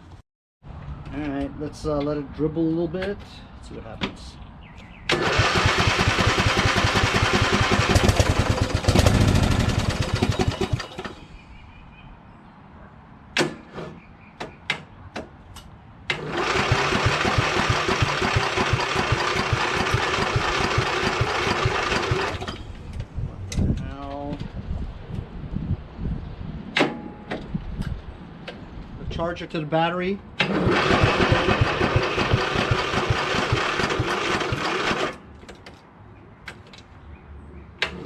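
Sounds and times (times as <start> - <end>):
engine cranking with electric starter: 5.1 - 11.2, 16.1 - 22.8, 30.4 - 35.2.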